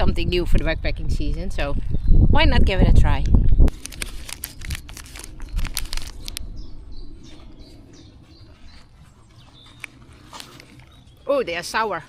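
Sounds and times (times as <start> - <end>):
plastic bag crinkling: 3.7 - 6.5.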